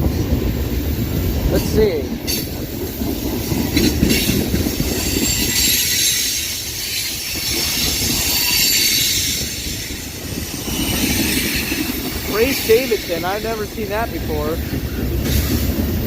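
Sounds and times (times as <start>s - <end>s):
steel wheels rumbling on rail: 0.0s - 16.0s
high-pitched wheel squeal: 5.0s - 11.8s.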